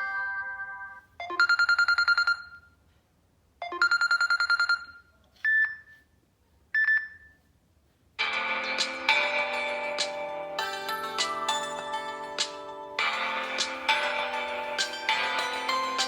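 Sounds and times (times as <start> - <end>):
phone ringtone trills: 0.0 - 2.7, 8.2 - 16.0.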